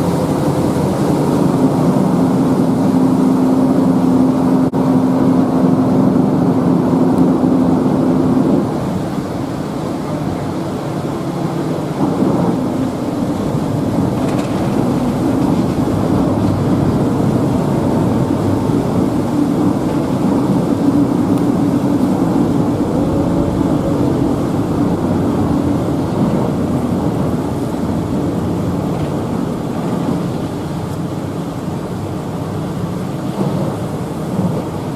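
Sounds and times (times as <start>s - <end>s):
ferry engine humming: 0.0s - 34.9s
rushing water and wind: 0.0s - 34.9s.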